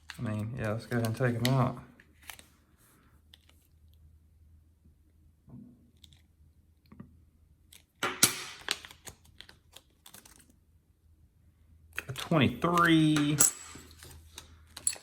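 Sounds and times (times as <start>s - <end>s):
packaging rustling: 8.8s - 10.5s
coins clicking: 14.7s - 15.0s.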